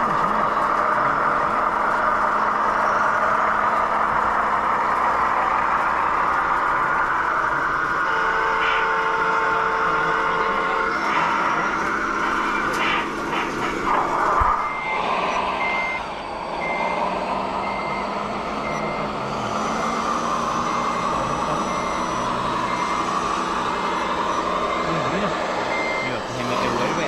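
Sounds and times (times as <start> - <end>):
high reversing beeper: 8.0 - 27.0
model motor whine: 10.2 - 27.0.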